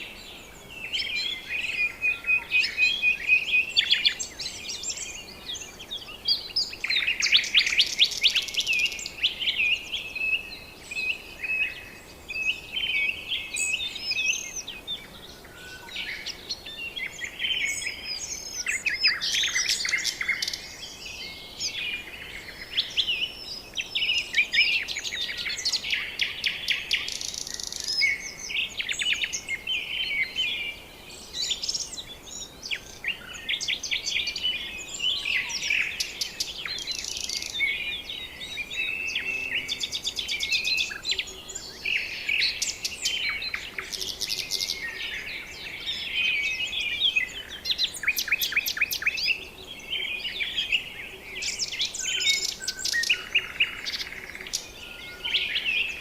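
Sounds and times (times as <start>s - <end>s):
chorus of birds chirping: 0.0s - 56.0s.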